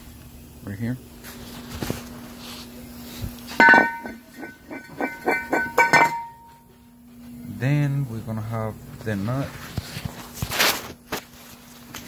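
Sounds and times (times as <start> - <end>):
metal clang ringing: 3.6 - 6.7.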